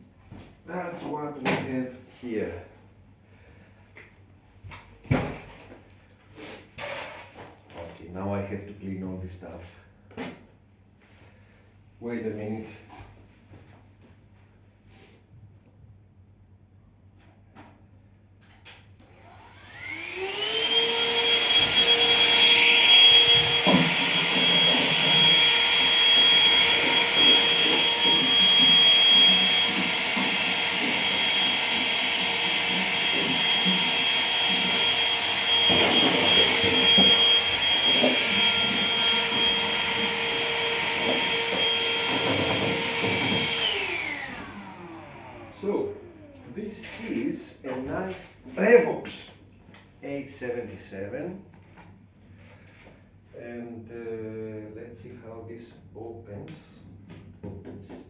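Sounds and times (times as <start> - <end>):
vacuum cleaner motor whine: 19.1 - 46.6.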